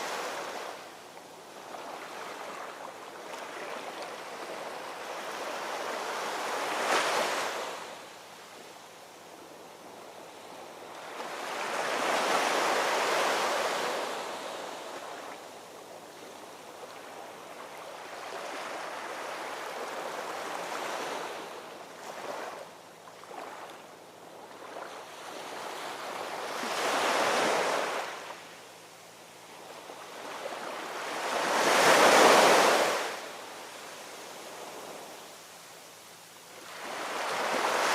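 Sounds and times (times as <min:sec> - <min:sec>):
ocean waves washing ashore: 0:29.4 - 0:35.9, 0:36.5 - 0:37.9.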